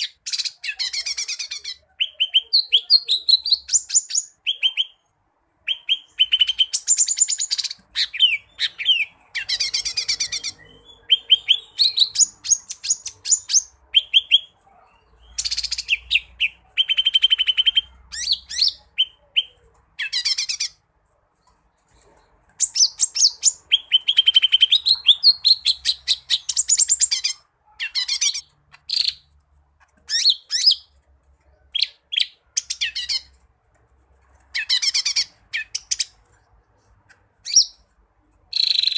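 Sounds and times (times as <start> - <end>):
bird chirps and trills: 0.0 - 20.8, 21.4 - 29.3, 38.5 - 38.9.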